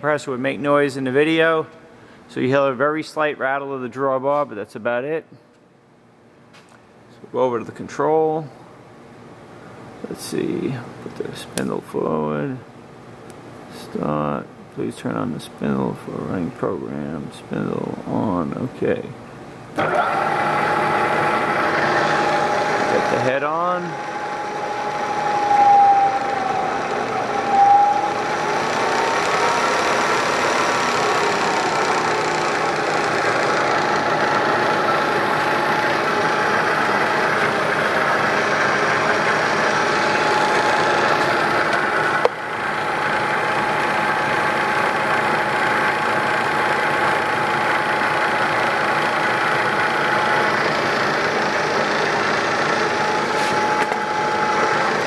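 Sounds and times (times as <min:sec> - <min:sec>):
mechanical hum: 0:00.0 - 0:55.0
sharp click: 0:11.6 - 0:11.8
milling spindle whine: 0:19.8 - 0:55.0.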